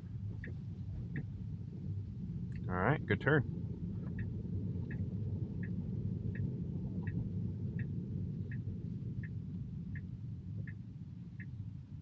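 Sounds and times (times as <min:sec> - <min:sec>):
road noise rumble: 0:00.0 - 0:12.0
turn signal ticking: 0:00.3 - 0:01.4, 0:04.0 - 0:11.6.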